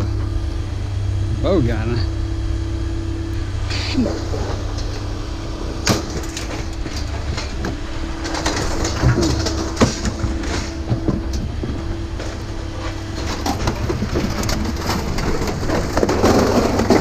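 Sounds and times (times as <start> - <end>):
engine hum: 0.0 - 17.0
metal clanks and knocks: 3.7 - 17.0.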